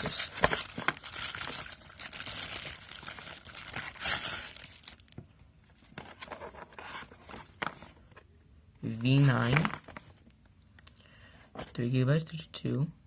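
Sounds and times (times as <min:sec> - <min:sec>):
packaging crinkling and rustling: 0:00.0 - 0:08.2, 0:08.9 - 0:10.3.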